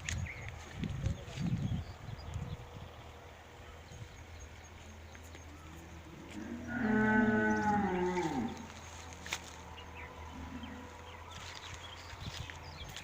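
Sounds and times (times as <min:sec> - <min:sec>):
cow mooing: 0:06.2 - 0:08.7.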